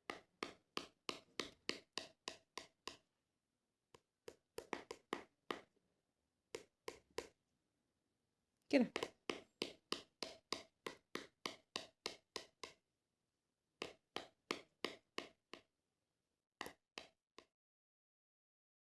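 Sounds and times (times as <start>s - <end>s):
tapping on hard surface: 0.0s - 3.0s, 3.9s - 5.7s, 6.5s - 7.4s, 8.8s - 12.8s, 13.8s - 15.7s, 16.6s - 17.5s.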